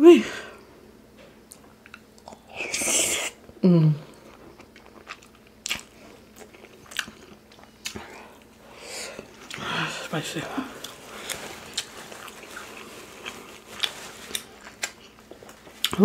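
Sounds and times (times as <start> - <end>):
close chewing and crunching: 1.5 - 2.5, 4.1 - 16.0
person humming mm: 2.4 - 4.2.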